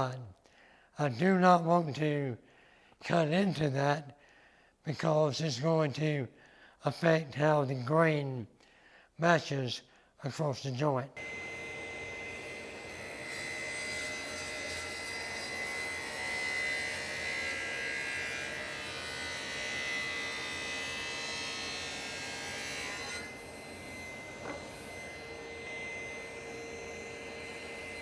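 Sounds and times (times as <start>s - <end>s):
table saw cutting wood: 11.2s - 28.0s
table saw whine: 11.2s - 28.0s.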